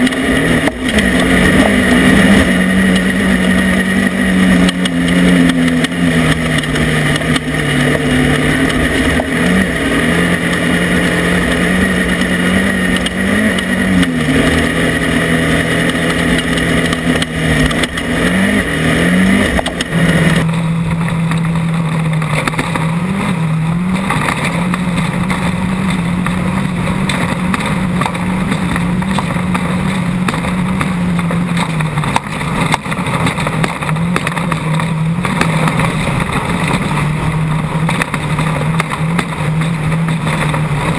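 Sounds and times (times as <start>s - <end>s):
race car engine running: 0.0s - 40.9s.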